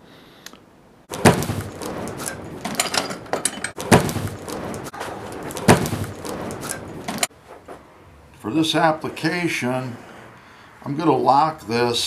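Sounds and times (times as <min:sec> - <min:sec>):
metal vise rattling and clicking: 0:01.1 - 0:07.3
sharp metal clunks: 0:01.1 - 0:07.3.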